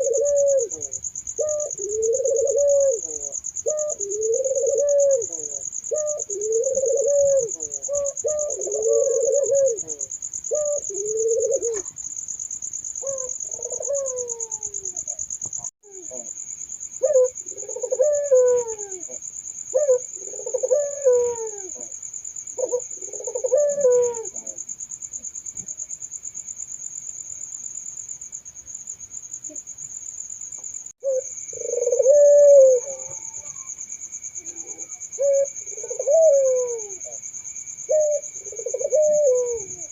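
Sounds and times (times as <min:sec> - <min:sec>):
doves cooing: 0:00.0 - 0:12.0, 0:13.0 - 0:16.4, 0:17.0 - 0:22.0, 0:22.6 - 0:24.7, 0:31.0 - 0:37.3, 0:37.9 - 0:39.9.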